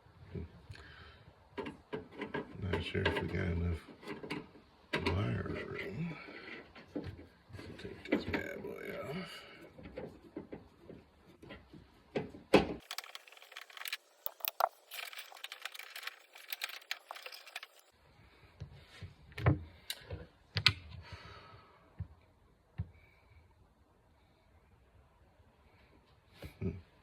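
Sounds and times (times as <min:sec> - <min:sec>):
metal parts clinking: 0:12.8 - 0:17.9.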